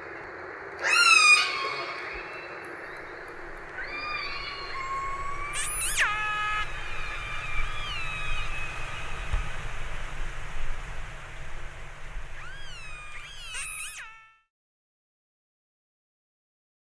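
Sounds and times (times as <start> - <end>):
killer whale calls: 0.8 - 2.5, 3.6 - 9.8, 12.4 - 14.4
steady low rumble: 1.8 - 13.5.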